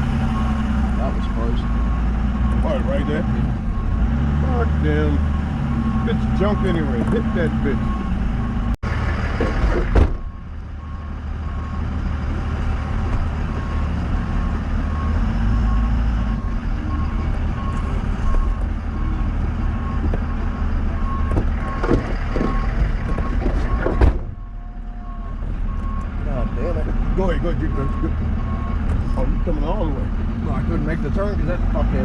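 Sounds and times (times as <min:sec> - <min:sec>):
truck engine running: 0:00.0 - 0:32.0
reversing alarm beeping: 0:00.2 - 0:08.8, 0:10.2 - 0:12.0, 0:13.5 - 0:26.6, 0:27.2 - 0:29.9.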